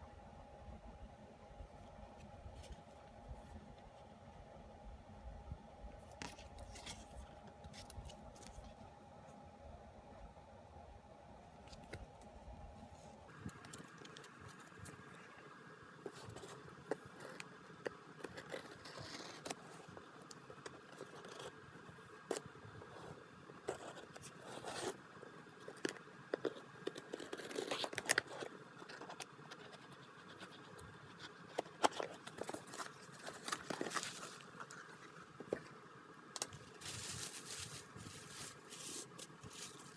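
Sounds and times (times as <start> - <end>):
packaging rustling and clicking: 31.7 - 35.6.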